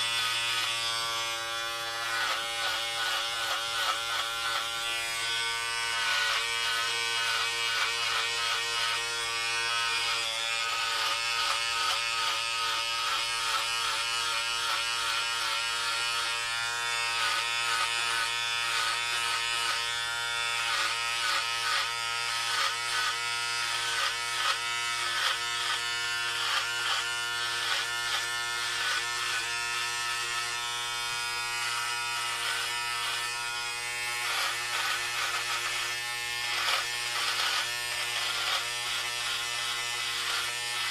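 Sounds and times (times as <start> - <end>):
electric hair clippers buzzing: 0.0 - 40.9.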